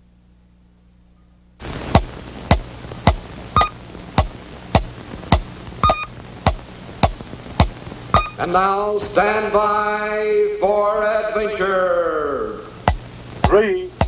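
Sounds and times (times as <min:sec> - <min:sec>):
low hum: 0:00.0 - 0:09.6
steady hiss: 0:00.0 - 0:14.0
sharp thumps dropping in pitch: 0:01.9 - 0:08.4, 0:12.8 - 0:13.7
short high beeps: 0:03.6 - 0:03.8, 0:05.8 - 0:06.1, 0:08.2 - 0:08.4.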